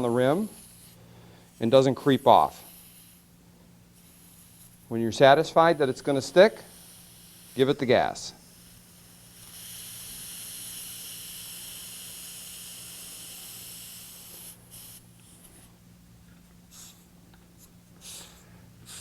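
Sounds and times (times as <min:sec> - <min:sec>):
inflator hissing: 0:05.5 - 0:15.5, 0:16.7 - 0:17.0, 0:18.0 - 0:19.0.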